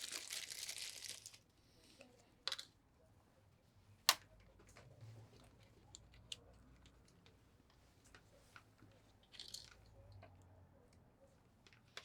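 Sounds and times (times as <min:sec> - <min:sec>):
plastic crinkling: 0:00.0 - 0:01.4.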